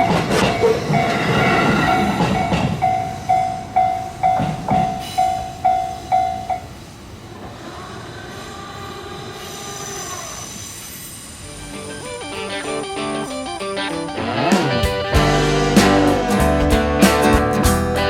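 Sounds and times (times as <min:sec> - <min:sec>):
level crossing bell ringing: 0:00.0 - 0:06.7, 0:11.5 - 0:14.6
faint steady whine: 0:01.9 - 0:15.1.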